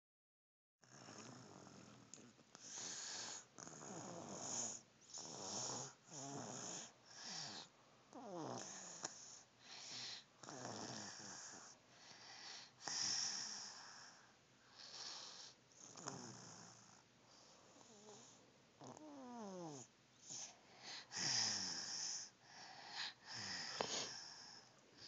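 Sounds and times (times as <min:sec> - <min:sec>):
snoring with whistling tone: 0:03.6 - 0:08.7.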